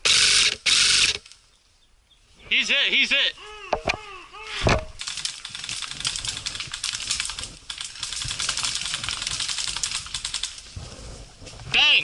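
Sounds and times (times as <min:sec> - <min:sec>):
rapid small clicks and crackles: 0:05.0 - 0:11.6.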